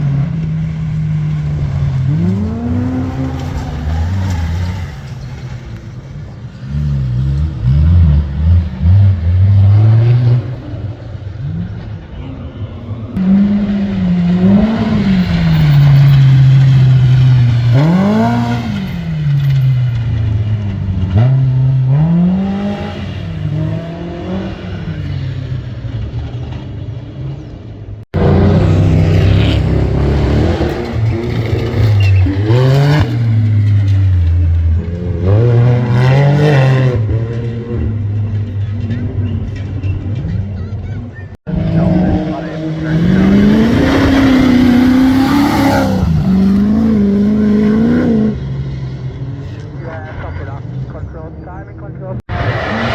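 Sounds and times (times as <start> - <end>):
racing vehicle engine revving: 0.0 - 52.9.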